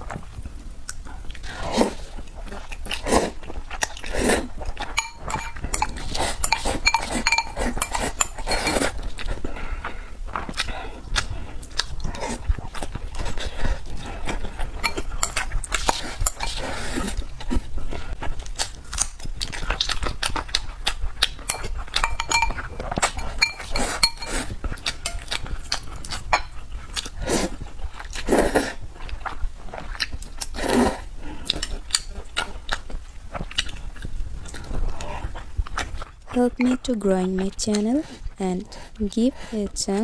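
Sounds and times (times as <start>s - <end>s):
wet chewing: 0.0s - 40.0s
utensils clicking against bowl: 4.9s - 8.8s, 21.5s - 25.4s.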